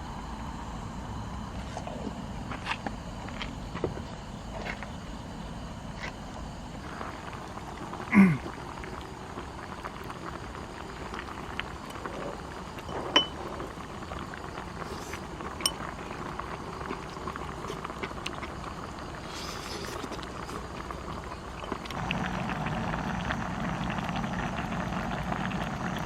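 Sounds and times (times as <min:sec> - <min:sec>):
water bubbling: 0:20.6 - 0:26.0.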